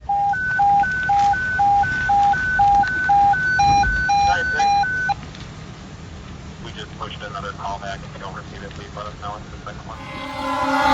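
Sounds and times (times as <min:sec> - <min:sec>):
electronic hi-lo alert tone: 0:10.0 - 0:10.9
higher-pitched beeping: 0:10.0 - 0:10.9.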